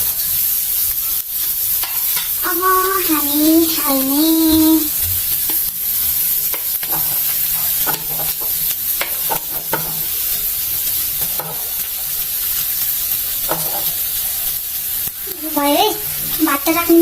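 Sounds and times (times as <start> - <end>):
food sizzling in hot oil: 0.0 - 17.0
spatula scraping and clinking pan: 1.8 - 2.4, 5.4 - 12.1, 13.4 - 14.0.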